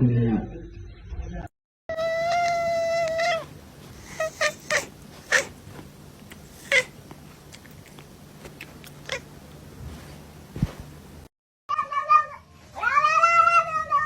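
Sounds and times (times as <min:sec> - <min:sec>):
cat high calls: 0:01.9 - 0:05.5.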